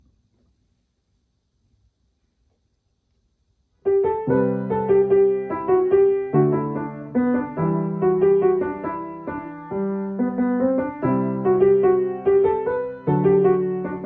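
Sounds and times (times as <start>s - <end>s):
piano melody: 3.8s - 14.0s.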